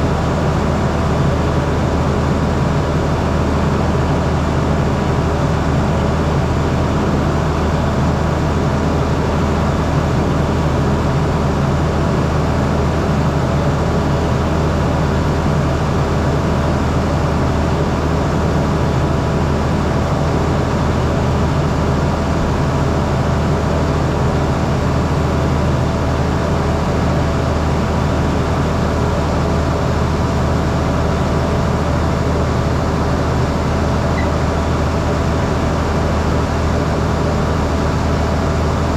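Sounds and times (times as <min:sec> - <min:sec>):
farm vehicle engine droning: 0:00.0 - 0:38.9.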